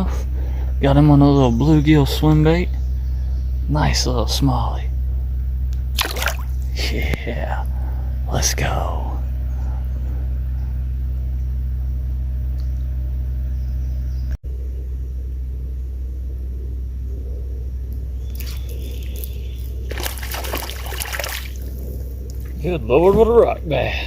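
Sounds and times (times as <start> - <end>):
water splashing and sloshing: 5.9 - 6.7, 18.3 - 22.6
river water running: 5.9 - 6.8, 18.3 - 22.8.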